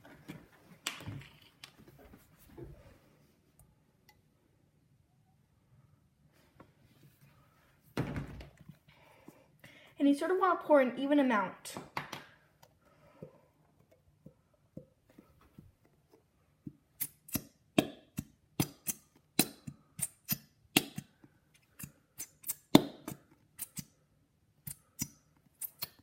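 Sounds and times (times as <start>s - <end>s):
glue bottles clicking and tapping: 11.9s - 23.9s.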